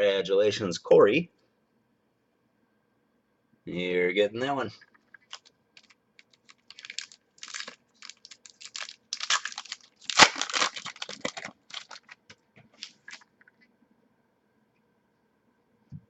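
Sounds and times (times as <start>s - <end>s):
card packaging crinkling: 5.1s - 13.3s.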